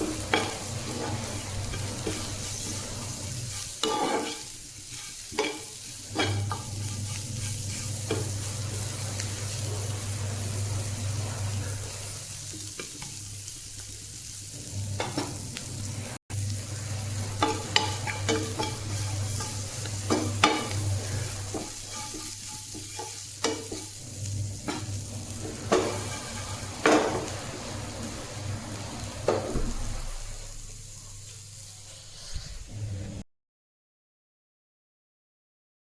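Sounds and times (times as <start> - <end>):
spatula scraping the pan: 0.0 - 13.2, 16.8 - 29.4
food sizzling in a pan: 0.0 - 33.2.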